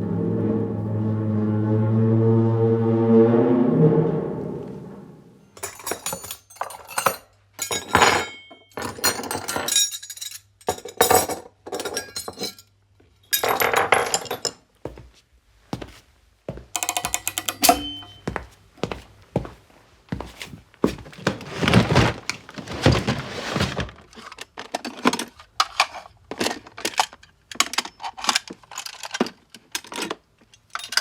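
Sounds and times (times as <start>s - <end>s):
music cue: 0.0s - 5.5s
glassy clinking and rattling: 5.6s - 12.6s.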